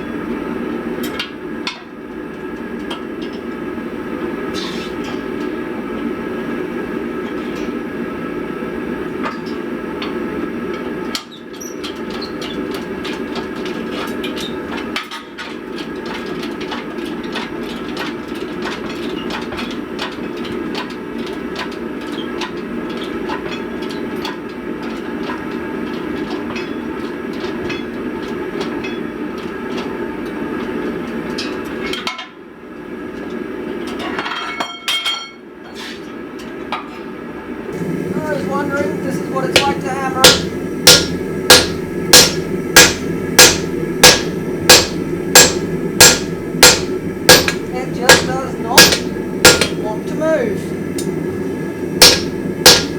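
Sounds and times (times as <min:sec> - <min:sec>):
forging machinery roar: 0:11.9 - 0:32.0, 0:37.7 - 0:52.9.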